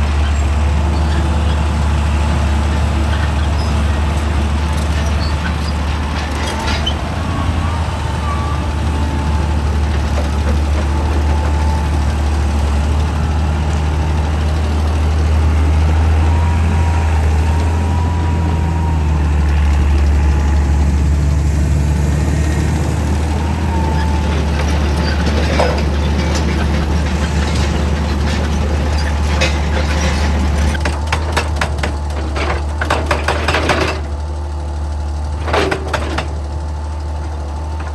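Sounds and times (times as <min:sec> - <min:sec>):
excavator diesel engine droning: 0:00.0 - 0:37.9.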